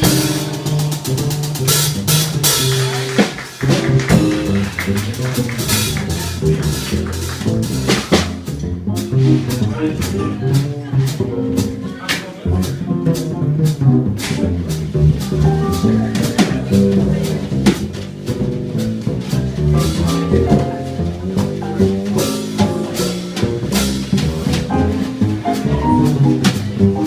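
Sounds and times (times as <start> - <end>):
bass line: 0.0 - 27.0
drum cymbals: 0.0 - 27.0
jazz combo playing: 0.0 - 27.0.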